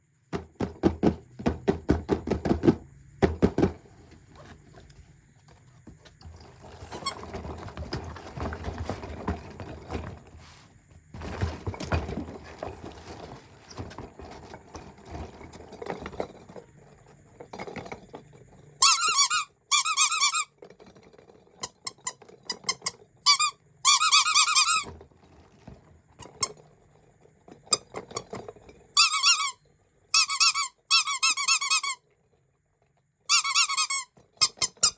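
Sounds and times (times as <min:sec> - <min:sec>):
soft rustling: 0:03.8 - 0:14.7
squeeze toy squeaking: 0:18.8 - 0:20.5, 0:22.7 - 0:24.9, 0:29.0 - 0:29.6, 0:30.2 - 0:32.0, 0:33.3 - 0:34.9.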